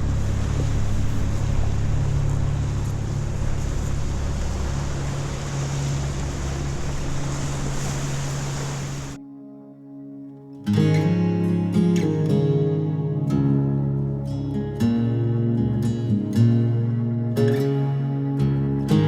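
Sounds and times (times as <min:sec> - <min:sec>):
water rushing past hull: 0:00.0 - 0:09.2
wind noise: 0:00.0 - 0:09.2
boat engine drone: 0:00.0 - 0:19.0.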